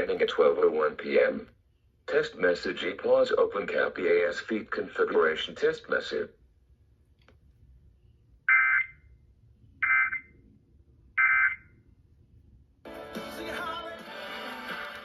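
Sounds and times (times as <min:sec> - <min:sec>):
music on radio: 0:00.0 - 0:01.5, 0:12.9 - 0:15.0.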